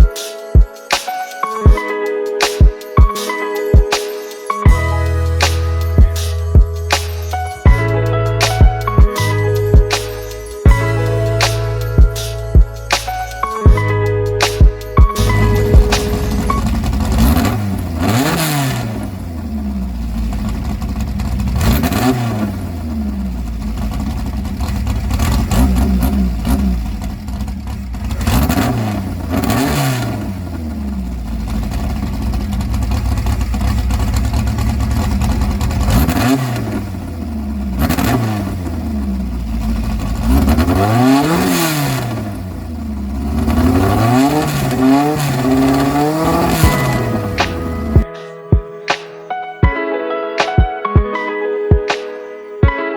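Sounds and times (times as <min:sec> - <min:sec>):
car engine revving: 0:15.2 - 0:48.0.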